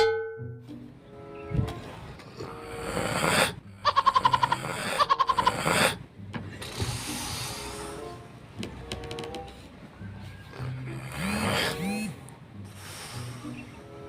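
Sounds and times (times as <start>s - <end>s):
man snoring: 2.4s - 3.6s, 4.4s - 6.0s, 10.6s - 12.2s.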